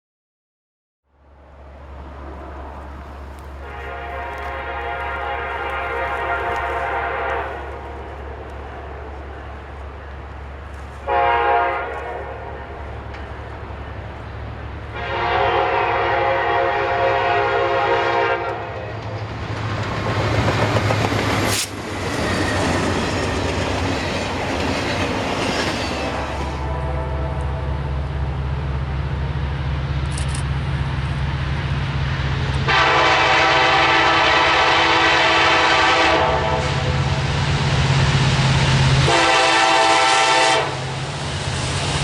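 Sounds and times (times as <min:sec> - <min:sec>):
train wheel and rail noise: 0:01.1 - 0:42.0
locomotive air horn: 0:03.6 - 0:08.1, 0:11.0 - 0:12.9, 0:14.9 - 0:19.0, 0:26.2 - 0:27.8, 0:32.6 - 0:37.1, 0:39.0 - 0:40.9.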